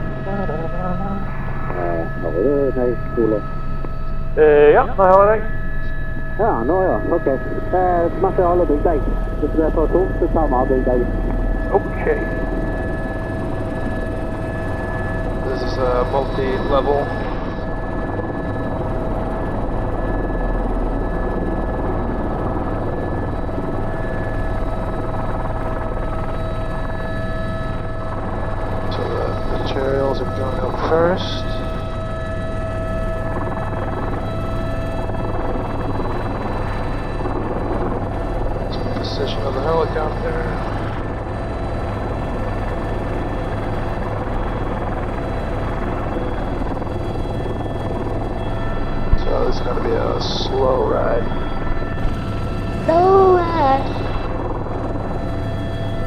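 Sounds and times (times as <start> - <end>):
helicopter engine whine: 0.0 - 56.0
helicopter rotor beat: 0.0 - 56.0.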